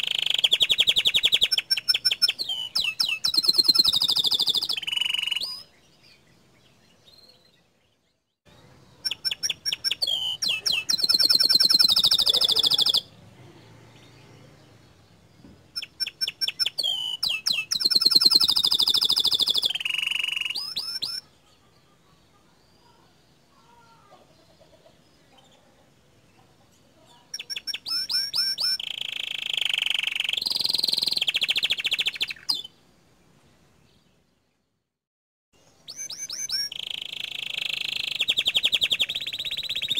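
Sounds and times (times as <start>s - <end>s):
canary singing trills: 0.0s - 32.9s, 35.6s - 39.9s.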